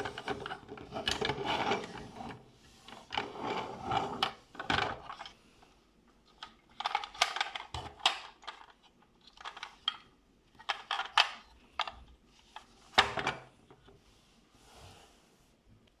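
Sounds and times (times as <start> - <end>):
plastic toy parts clicking and clattering: 4.2 - 5.4, 6.3 - 12.0.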